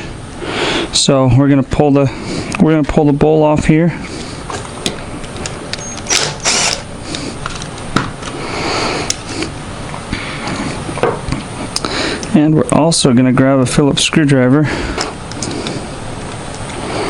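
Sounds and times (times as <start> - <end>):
hand tools clicking and scraping: 4.2 - 8.4.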